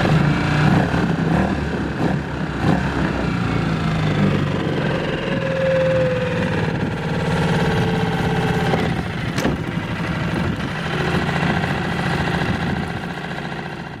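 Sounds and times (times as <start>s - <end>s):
outboard motor idling: 3.4s - 14.0s.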